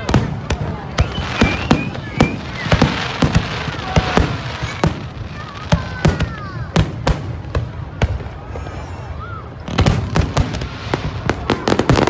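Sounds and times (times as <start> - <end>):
firework bangs: 0.0 - 12.0
firework crackling: 0.0 - 12.0
falling firework whistles: 0.8 - 5.2.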